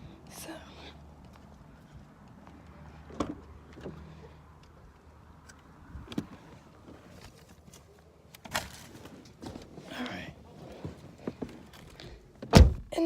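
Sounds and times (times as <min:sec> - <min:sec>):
knocks and clicks of car door: 0:12.4 - 0:12.9.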